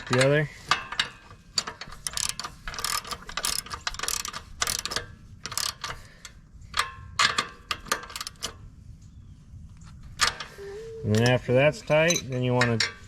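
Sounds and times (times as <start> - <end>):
ratchet wrench clicking: 1.6 - 6.1, 6.7 - 8.5.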